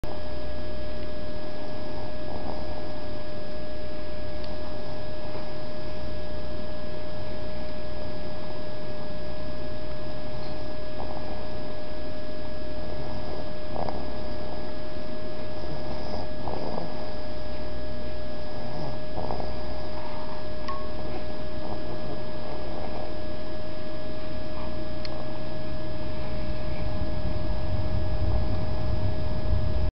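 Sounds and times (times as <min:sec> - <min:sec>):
person snoring: 0:01.5 - 0:03.2, 0:11.0 - 0:11.7, 0:12.9 - 0:14.8, 0:15.4 - 0:17.3, 0:18.5 - 0:23.3
faint snorts: 0:01.6 - 0:03.1, 0:10.9 - 0:11.7, 0:12.9 - 0:14.8, 0:15.4 - 0:17.3, 0:18.4 - 0:23.3
steady electronic tone: 0:19.8 - 0:29.9.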